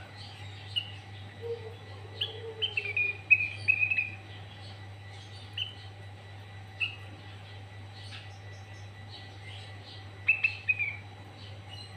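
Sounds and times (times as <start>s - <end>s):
steady low hum: 0.0s - 11.9s
bulbul whistled song: 10.2s - 11.0s.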